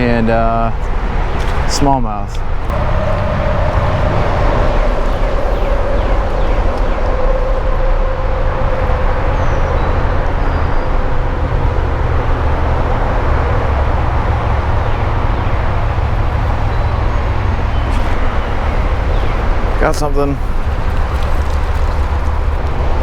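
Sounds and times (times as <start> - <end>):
highway traffic rumble: 0.0 - 23.0.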